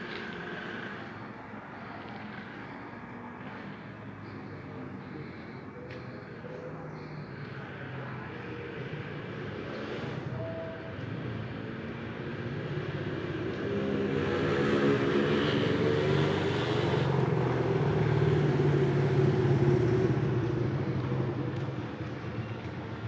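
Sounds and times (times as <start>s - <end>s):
bus engine passing: 11.0s - 23.0s.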